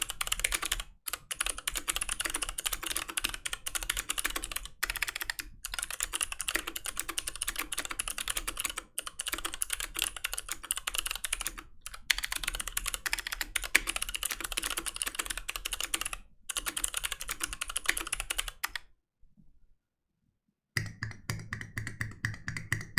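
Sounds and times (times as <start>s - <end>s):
mechanical keyboard typing: 0.0s - 18.8s.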